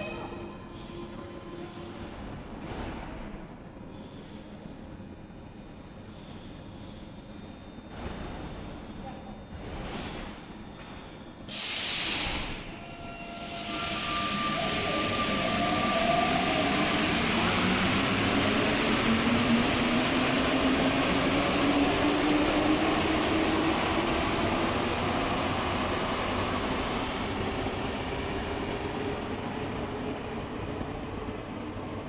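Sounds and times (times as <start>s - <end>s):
train pulling out: 9.9s - 32.0s
sharp hiss of air: 11.5s - 12.7s
train motor whine: 12.5s - 20.0s.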